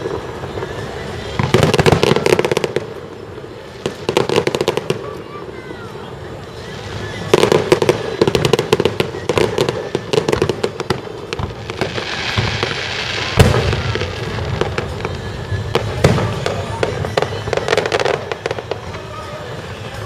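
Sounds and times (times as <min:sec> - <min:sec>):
fireworks crackling pops: 0:00.0 - 0:20.0
loud firework bang: 0:11.4 - 0:18.6.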